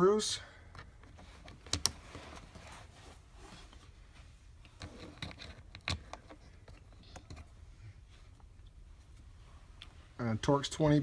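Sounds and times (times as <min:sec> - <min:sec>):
small clicks and taps of screws: 0:00.7 - 0:02.0.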